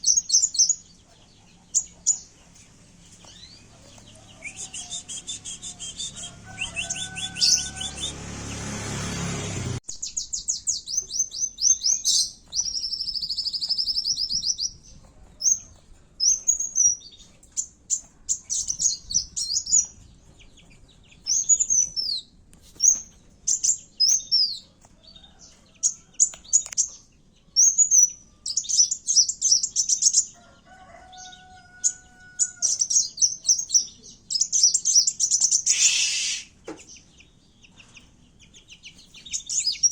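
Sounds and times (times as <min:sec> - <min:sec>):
sunbird high-pitched trills: 0:31.8 - 0:36.6.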